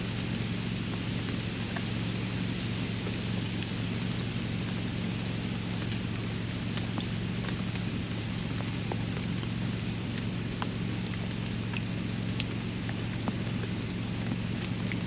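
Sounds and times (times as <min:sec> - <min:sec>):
low hum: 0:00.0 - 0:15.0
raindrops ticking: 0:00.0 - 0:15.0
steady rain hiss: 0:00.0 - 0:15.0.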